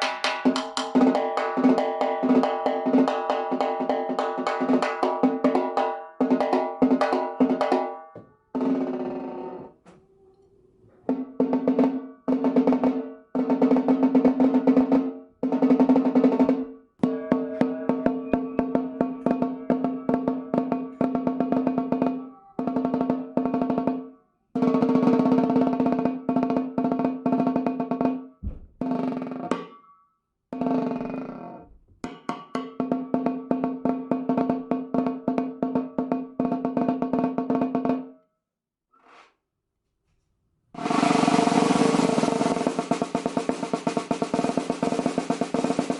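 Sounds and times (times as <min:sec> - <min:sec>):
snare drum rolls: 0:40.8 - 0:45.9.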